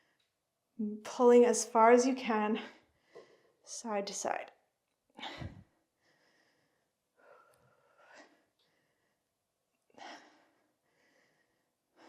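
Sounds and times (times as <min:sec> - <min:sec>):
woman breathing hard: 0:05.2 - 0:09.3, 0:09.9 - 0:12.0.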